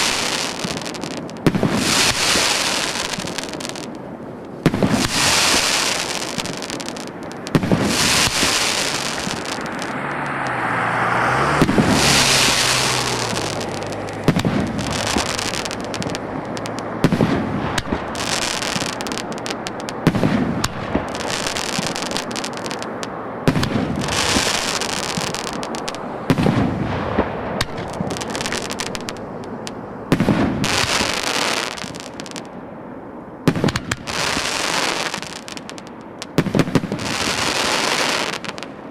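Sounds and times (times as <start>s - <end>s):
firework bangs: 0.0s - 32.6s, 33.4s - 38.9s
fizzing crackling tail: 11.3s - 16.9s.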